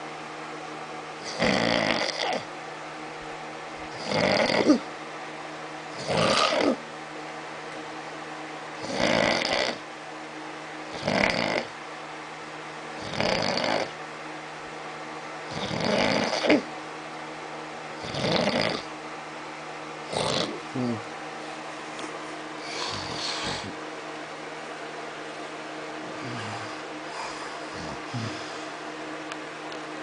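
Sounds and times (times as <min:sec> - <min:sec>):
man snoring: 0:01.2 - 0:02.5, 0:03.9 - 0:04.9, 0:06.0 - 0:06.8, 0:08.8 - 0:09.8, 0:10.9 - 0:11.7, 0:13.0 - 0:13.9, 0:15.5 - 0:16.7, 0:18.0 - 0:18.9, 0:20.1 - 0:21.1, 0:22.6 - 0:23.8, 0:26.1 - 0:28.7.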